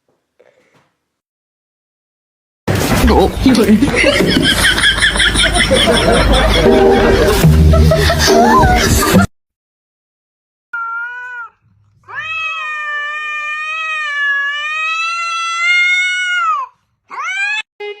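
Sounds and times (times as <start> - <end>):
cat meowing: 10.8 - 17.7.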